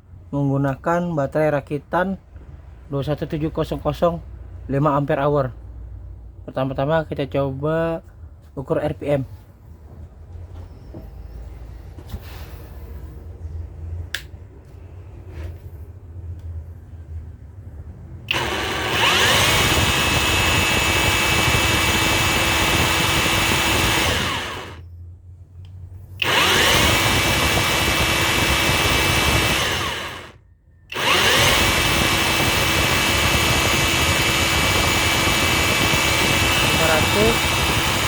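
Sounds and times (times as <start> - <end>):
rotary hammer motor whine: 18.3 - 24.8, 26.2 - 38.0.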